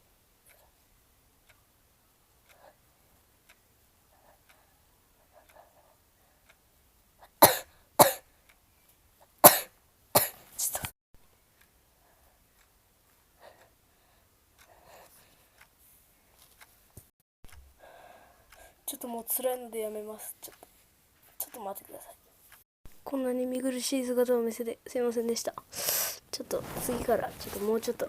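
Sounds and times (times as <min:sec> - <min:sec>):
faint sniffing: 0:25.7 - 0:26.9
tissue rustling: 0:26.4 - 0:28.0.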